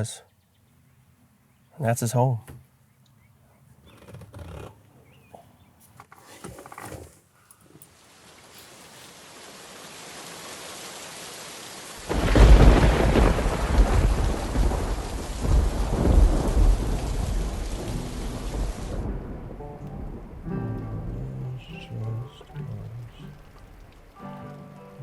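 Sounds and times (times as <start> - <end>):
steady rain: 7.8 - 25.0
thunder crack rolling: 12.0 - 24.1
music: 19.5 - 23.4, 24.1 - 25.0.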